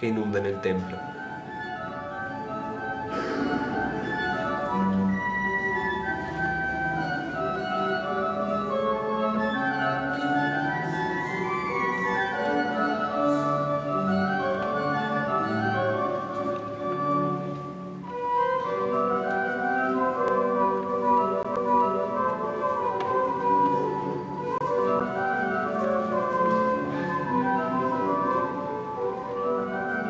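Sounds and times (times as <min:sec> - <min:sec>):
pipe organ playing: 0:00.0 - 0:30.0.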